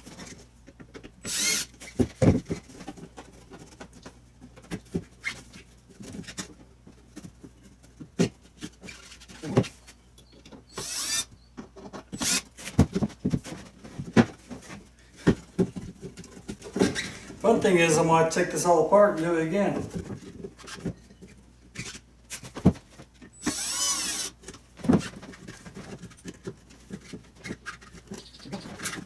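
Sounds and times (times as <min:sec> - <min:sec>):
power drill running: 0:01.2 - 0:01.7, 0:10.7 - 0:11.3, 0:12.1 - 0:12.5, 0:23.4 - 0:24.4.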